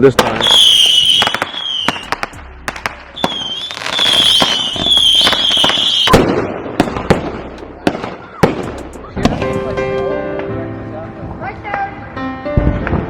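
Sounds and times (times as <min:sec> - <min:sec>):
firework pops and cracks: 0:00.1 - 0:09.6
loud firework bang: 0:00.2 - 0:09.7
firework whistles: 0:00.4 - 0:02.2, 0:03.2 - 0:06.2.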